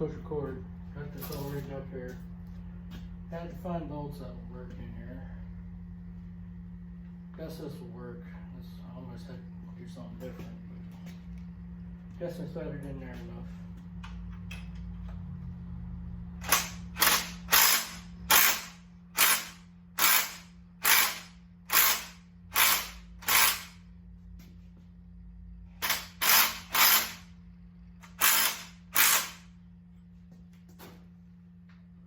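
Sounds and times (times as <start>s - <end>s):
ratchet wrench clicking: 16.4s - 23.8s, 25.8s - 27.3s, 28.0s - 29.5s.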